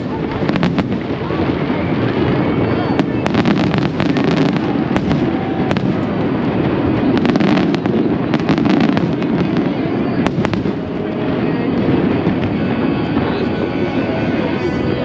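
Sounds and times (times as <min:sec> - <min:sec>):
fireworks crackling pops: 0:00.0 - 0:13.5
steady low din: 0:09.1 - 0:15.0.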